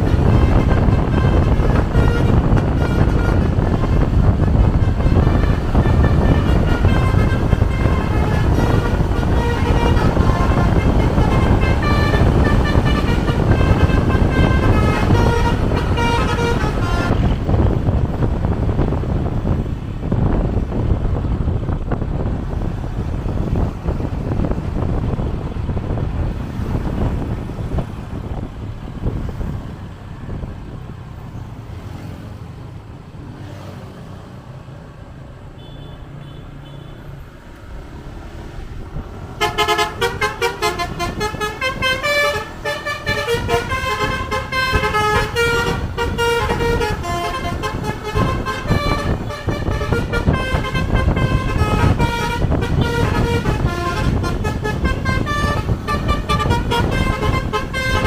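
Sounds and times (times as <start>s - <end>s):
bus musical horn playing tune: 0.0s - 18.0s, 35.6s - 37.2s, 39.3s - 58.0s
low vehicle rumble: 0.0s - 35.6s, 37.1s - 58.0s.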